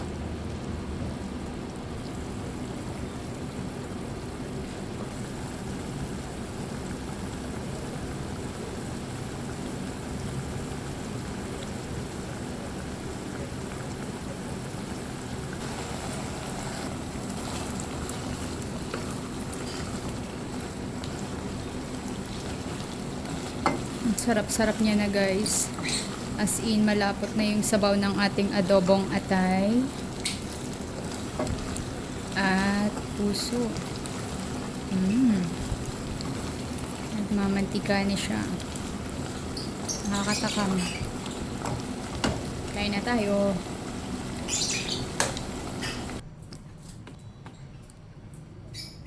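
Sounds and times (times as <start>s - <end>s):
sauce bubbling in a pan: 0.1s - 46.2s.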